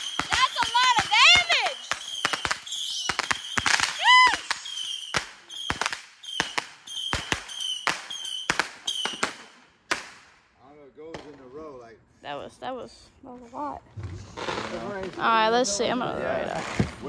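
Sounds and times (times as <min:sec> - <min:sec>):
fireworks hissing bursts: 0:00.0 - 0:10.2
fireworks popping and crackling: 0:00.0 - 0:10.4, 0:14.0 - 0:17.0.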